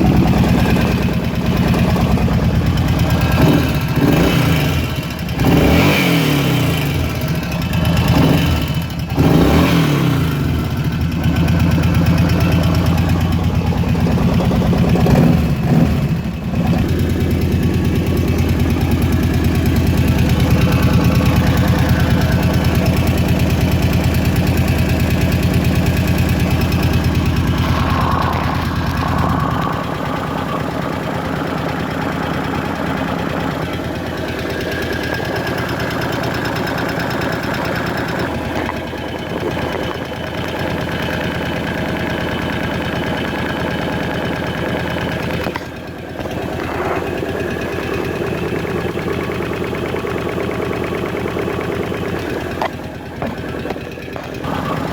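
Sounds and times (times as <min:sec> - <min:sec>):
atv engine revving and idling: 0:00.0 - 0:54.9
engine rattle: 0:00.0 - 0:54.9.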